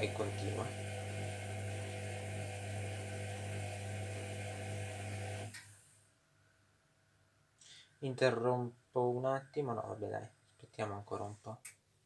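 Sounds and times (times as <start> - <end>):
washing machine humming: 0.0 - 5.8.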